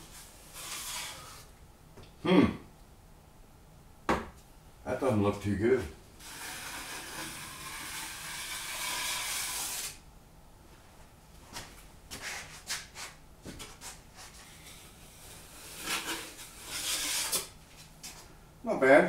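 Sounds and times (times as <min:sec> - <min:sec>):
drywall knife scraping compound: 0:00.0 - 0:01.5, 0:06.2 - 0:10.0, 0:12.2 - 0:17.6.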